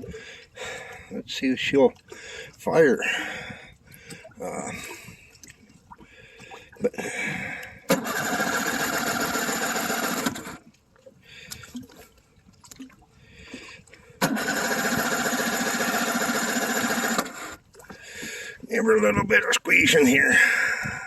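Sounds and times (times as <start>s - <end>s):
electric starter cranking motor: 7.9s - 10.6s, 14.2s - 17.6s.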